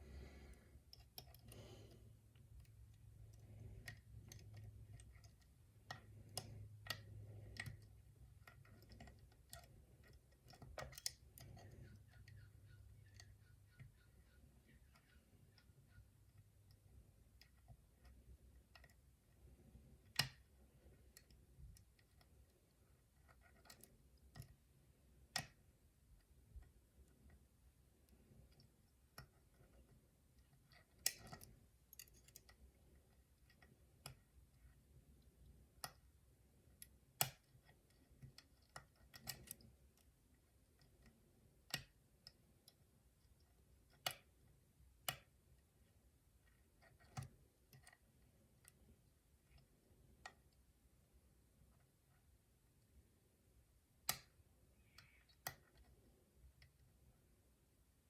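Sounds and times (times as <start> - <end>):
lock pick metallic clicks: 2.4 - 19.0, 30.4 - 32.7, 36.7 - 40.1.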